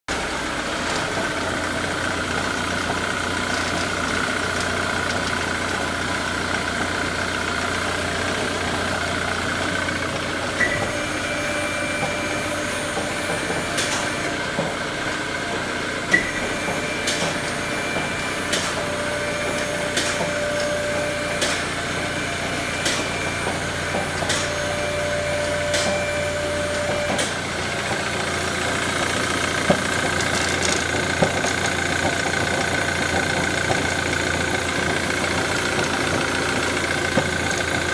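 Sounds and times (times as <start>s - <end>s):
car engine running: 0.1s - 37.9s
sharp clicking rattles: 28.6s - 37.9s.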